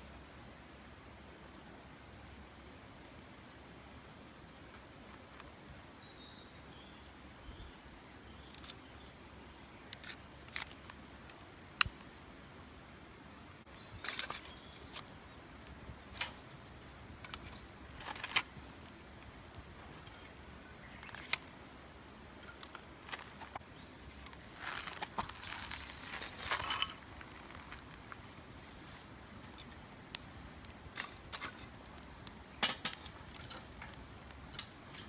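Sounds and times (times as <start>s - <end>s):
faint steady hiss: 0.0s - 35.0s
sharp clicks and knocks: 31.0s - 34.8s.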